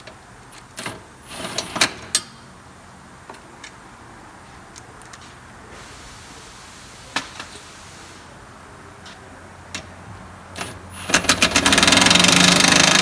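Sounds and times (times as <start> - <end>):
impact driver hammering: 10.6 - 13.0.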